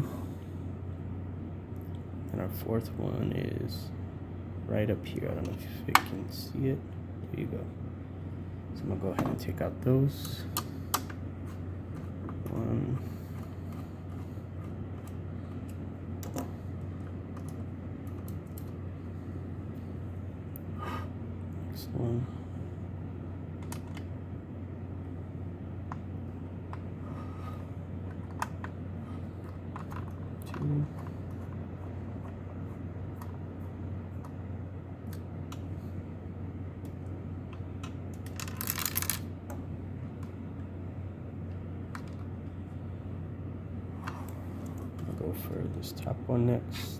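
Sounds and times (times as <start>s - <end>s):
steady low hum: 0.0s - 46.9s.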